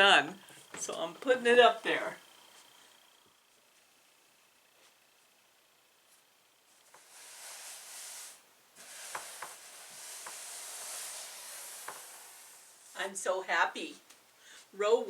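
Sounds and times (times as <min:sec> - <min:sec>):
fabric rustling and rubbing: 0:06.0 - 0:13.0.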